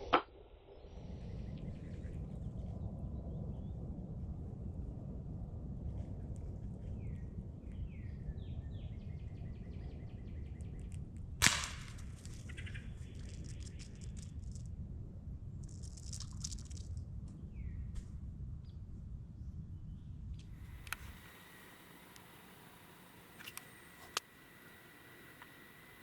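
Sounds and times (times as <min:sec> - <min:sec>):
songbirds chirping: 0:06.4 - 0:11.3, 0:12.1 - 0:14.5, 0:17.3 - 0:18.0, 0:19.5 - 0:26.0
air rifle shot: 0:11.4 - 0:12.2.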